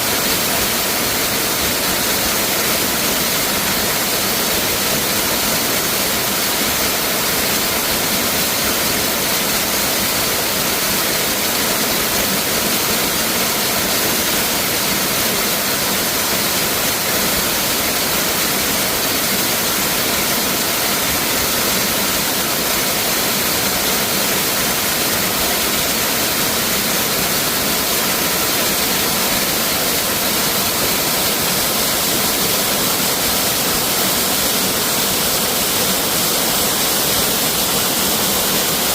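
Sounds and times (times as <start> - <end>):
waterfall pouring: 0.0 - 38.9.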